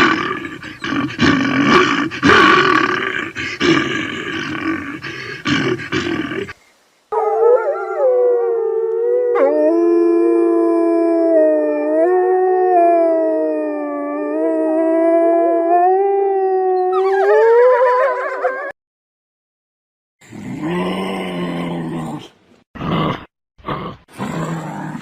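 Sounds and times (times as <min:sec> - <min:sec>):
dog howling: 0:07.1 - 0:18.7.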